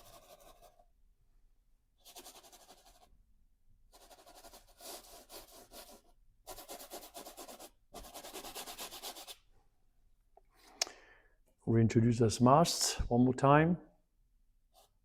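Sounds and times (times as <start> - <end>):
paintbrush scrubbing on canvas: 0.0 - 0.8, 2.0 - 3.1, 3.9 - 9.5.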